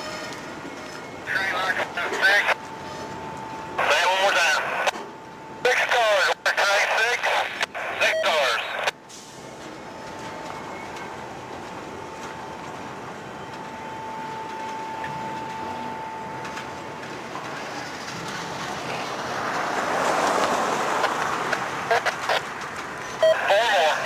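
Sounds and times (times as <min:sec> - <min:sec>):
freight train rolling on rails: 0:00.0 - 0:03.8, 0:09.1 - 0:23.3.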